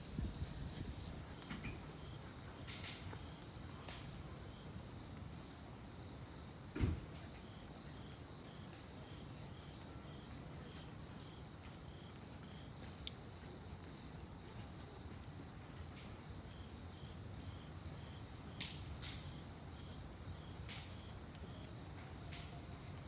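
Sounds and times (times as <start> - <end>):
crickets chirping: 0.0 - 3.5, 7.4 - 18.6, 19.2 - 23.0
burning wood popping: 0.0 - 4.6, 17.8 - 19.5, 20.6 - 22.6
wood fire burning: 0.0 - 23.0.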